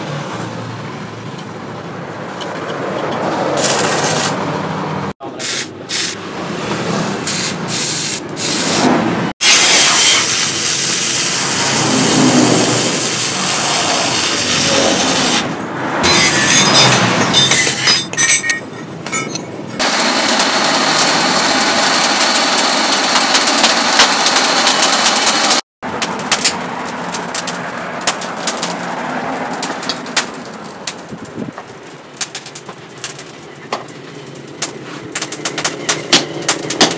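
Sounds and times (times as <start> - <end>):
metal grinding hiss: 7.2 - 15.5.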